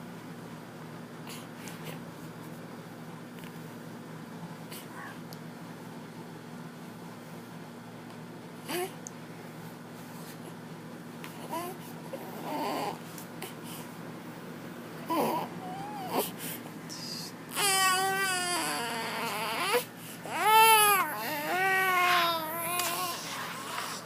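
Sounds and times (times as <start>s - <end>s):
high-pitched crying: 16.9s - 23.3s.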